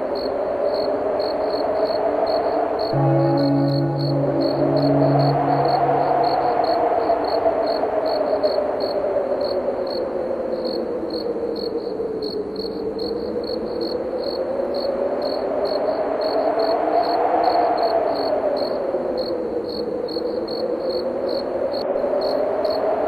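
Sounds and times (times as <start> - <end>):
blowing wind: 0.0 - 13.4, 14.0 - 23.0
crickets chirping: 0.0 - 23.0
church bell ringing: 3.0 - 6.8.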